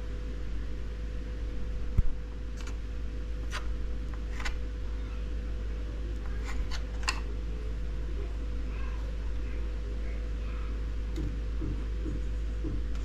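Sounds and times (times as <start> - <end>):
steady low hum: 0.0 - 13.0
light clicks and scrapes: 6.2 - 7.2.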